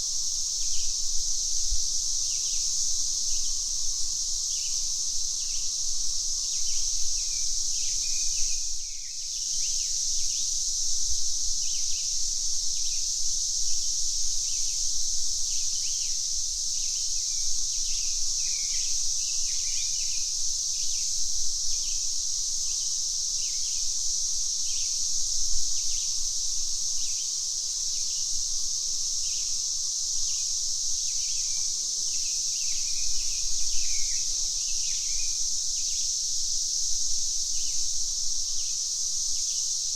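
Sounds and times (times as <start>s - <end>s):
cicadas droning: 0.0s - 39.9s.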